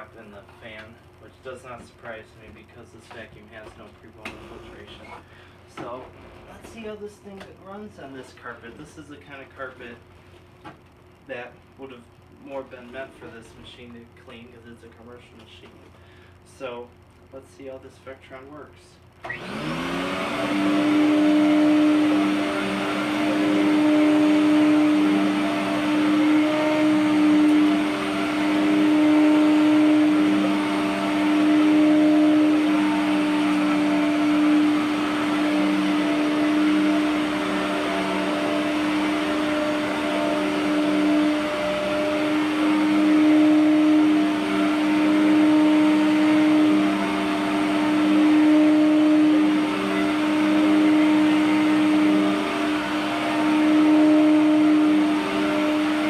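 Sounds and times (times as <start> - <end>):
vacuum cleaner motor whining: 1.7 - 7.8, 19.2 - 56.0.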